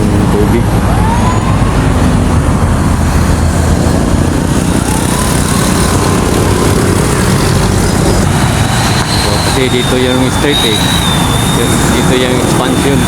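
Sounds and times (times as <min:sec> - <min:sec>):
road and traffic noise: 0:00.0 - 0:13.0
vehicle engine running: 0:01.8 - 0:13.0
faint rising whine: 0:04.9 - 0:13.0.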